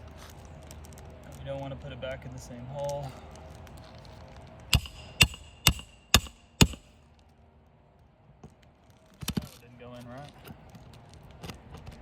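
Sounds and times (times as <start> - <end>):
hammer driving nail with metallic ring: 4.7 - 6.9.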